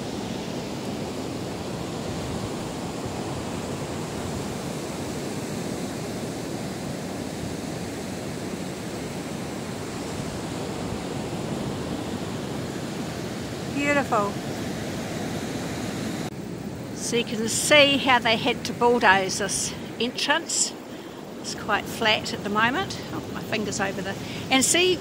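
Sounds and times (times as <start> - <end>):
ocean surf breaking on beach: 0.0 - 25.0.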